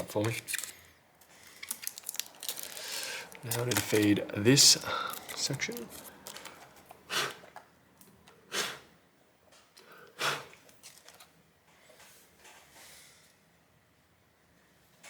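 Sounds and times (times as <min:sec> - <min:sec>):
sharp breaths through nose: 0:02.6 - 0:03.4, 0:06.0 - 0:07.5, 0:08.4 - 0:09.0, 0:09.8 - 0:10.6.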